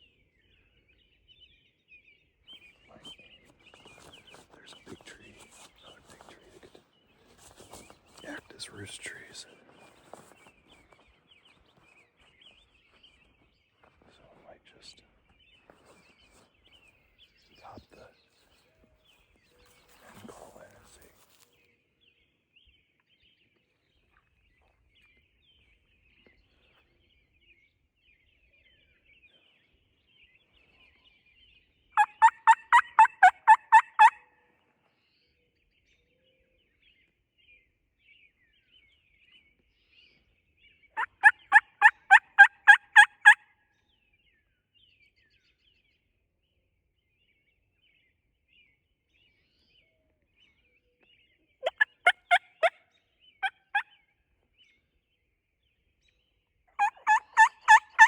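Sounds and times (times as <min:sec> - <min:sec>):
faint songbird chirps: 0:00.0 - 0:58.0
turkey hen yelps: 0:32.0 - 0:34.2, 0:41.0 - 0:43.4, 0:51.6 - 0:52.8, 0:56.8 - 0:58.0.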